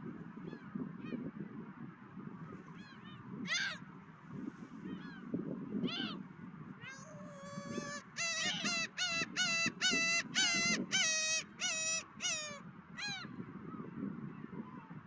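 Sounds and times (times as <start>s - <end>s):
low wind noise: 0.0s - 15.0s
gull calling: 2.9s - 3.8s, 6.9s - 13.3s.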